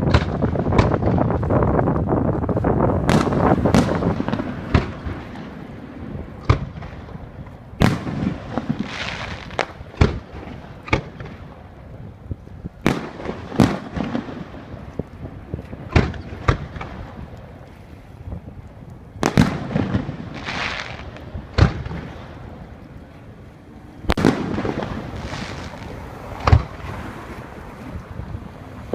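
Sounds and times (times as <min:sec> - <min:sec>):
firework booms: 0:00.0 - 0:11.7, 0:12.7 - 0:17.4, 0:19.2 - 0:22.6, 0:24.1 - 0:27.0.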